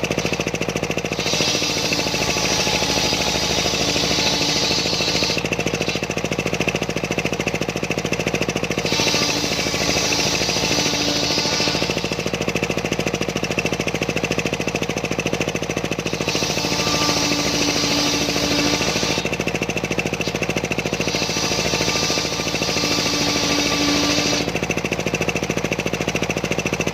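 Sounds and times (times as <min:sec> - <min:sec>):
saw blade cutting log: 0:00.0 - 0:26.9
sawmill engine running: 0:00.0 - 0:26.9.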